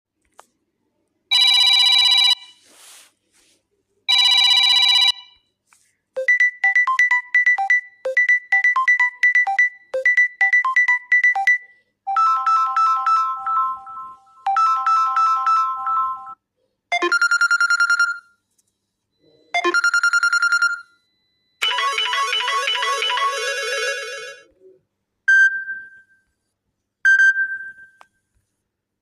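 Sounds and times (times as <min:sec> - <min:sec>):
ringtone of chiming notes: 0:06.2 - 0:18.2, 0:19.6 - 0:24.4
ringtone of plucked notes: 0:21.6 - 0:24.4.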